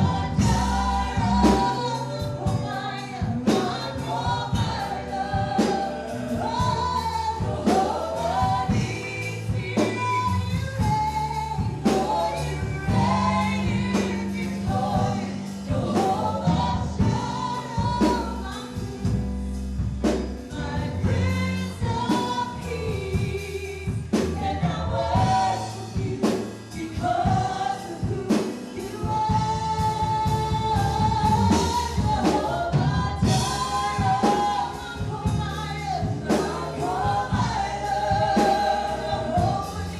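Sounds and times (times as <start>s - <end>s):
band playing: 0.0s - 39.9s
bass line: 0.0s - 39.9s
group of singers: 0.0s - 39.9s.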